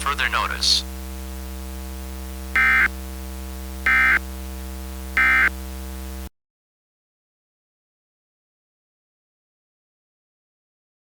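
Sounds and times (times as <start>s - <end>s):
electrical hum: 0.0s - 6.3s.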